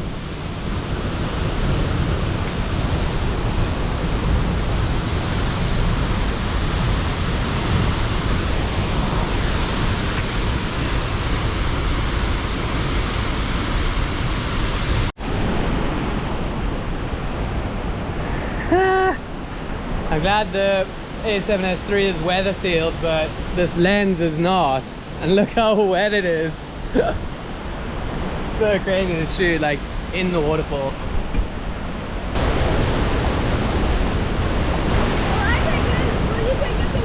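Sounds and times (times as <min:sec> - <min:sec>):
waterfall roaring: 0:00.7 - 0:16.4, 0:32.3 - 0:37.0.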